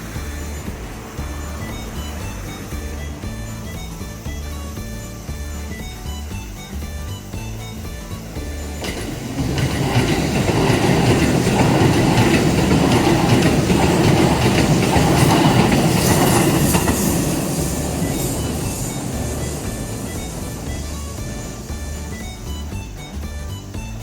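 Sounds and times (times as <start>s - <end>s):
electric train passing: 0.0s - 23.8s
train wheels clattering over rail joints: 7.6s - 23.7s.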